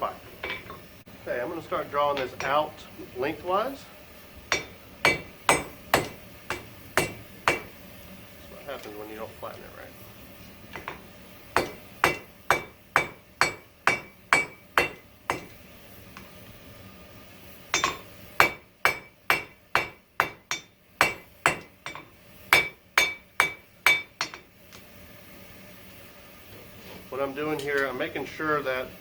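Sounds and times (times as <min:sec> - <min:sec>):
hammer striking steel on anvil: 0:00.4 - 0:00.8, 0:04.5 - 0:07.8, 0:10.8 - 0:15.6, 0:17.7 - 0:24.5.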